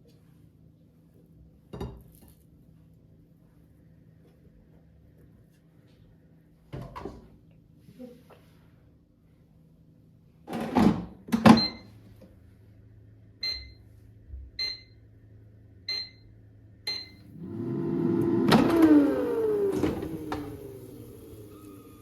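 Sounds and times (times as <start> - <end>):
motor whirring: 17.4 - 22.0.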